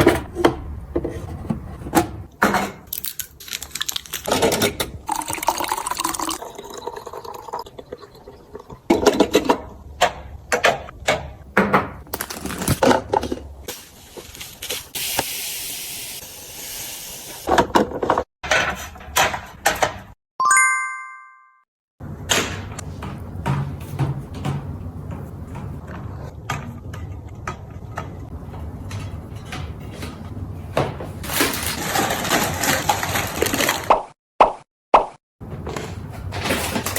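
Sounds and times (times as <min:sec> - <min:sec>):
short high chime: 0:20.4 - 0:21.6
packaging knocking and clattering: 0:31.2 - 0:33.9.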